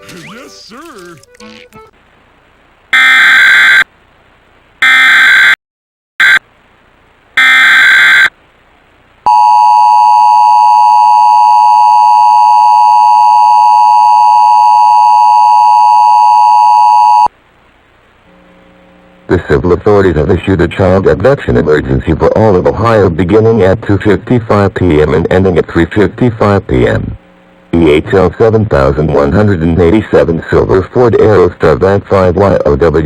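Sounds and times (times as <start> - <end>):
digital header tones: 6.2 - 6.4.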